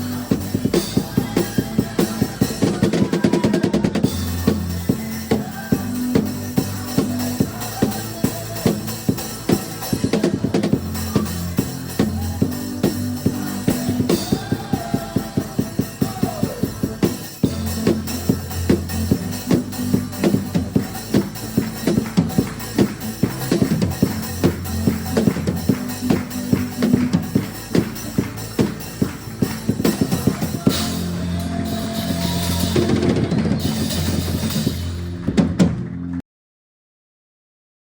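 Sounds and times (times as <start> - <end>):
drum kit kick and snare: 0.0 - 36.1
backing track bass line: 0.0 - 36.2
band playing a held chord: 4.0 - 35.4
cymbals ringing: 17.2 - 35.2.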